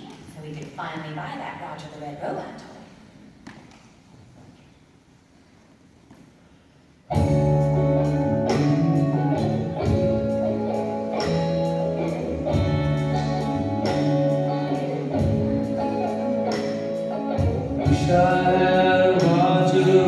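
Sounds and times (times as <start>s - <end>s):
instrumental music with a beat: 7.1s - 20.0s.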